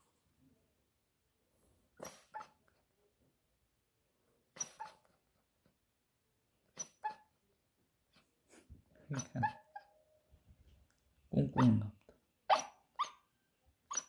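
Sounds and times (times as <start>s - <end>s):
puppy whimpering: 2.0s - 2.6s, 6.8s - 7.3s, 9.1s - 9.9s, 11.6s - 11.9s, 12.5s - 13.3s.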